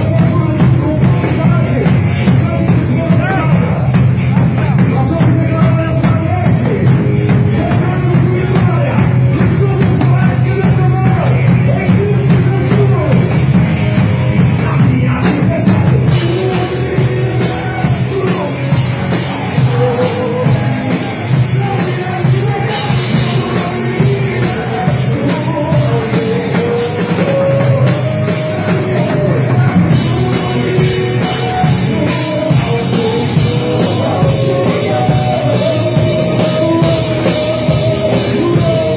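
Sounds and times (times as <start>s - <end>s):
drum kit: 0.0s - 38.9s
rock praise band playing: 0.0s - 38.9s
steady bass: 0.0s - 38.9s.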